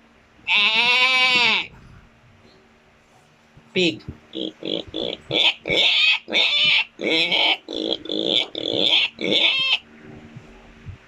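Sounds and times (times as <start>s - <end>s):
pig calls: 0.4s - 1.7s, 4.3s - 9.8s.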